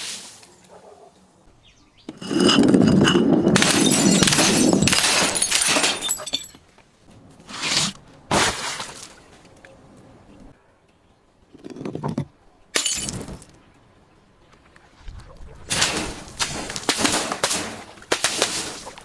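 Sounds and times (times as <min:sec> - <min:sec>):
glass crunching: 0:02.2 - 0:06.6, 0:12.8 - 0:13.5
glass bottle shattering: 0:02.4 - 0:06.6, 0:12.8 - 0:13.5.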